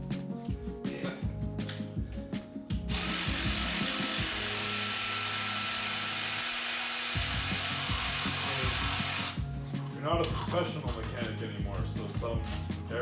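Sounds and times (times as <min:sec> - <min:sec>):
background music: 0:00.0 - 0:13.0
power tool whirring: 0:02.9 - 0:09.4.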